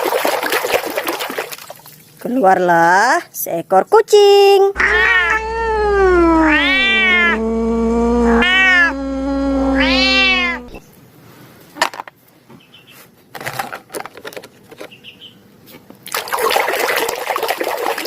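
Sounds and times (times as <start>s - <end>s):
cat meowing: 4.8s - 10.8s.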